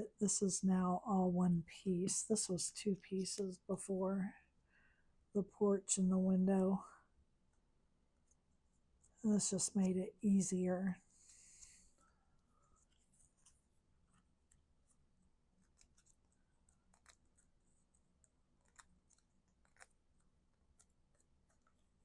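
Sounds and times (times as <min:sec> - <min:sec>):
card stock rustling and clicking: 0:15.6 - 0:22.0.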